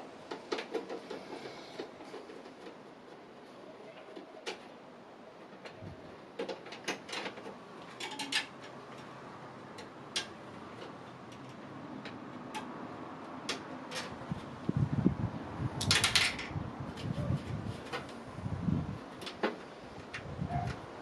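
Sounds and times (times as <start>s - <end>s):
computer parts clicking and tapping: 6.4s - 9.1s.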